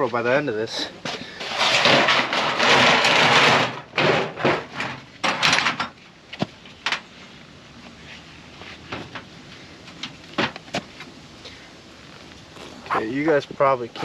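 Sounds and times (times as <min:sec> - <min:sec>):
scraping rustling noise: 0:00.0 - 0:11.2
sharp knocks and clunks: 0:01.0 - 0:07.0.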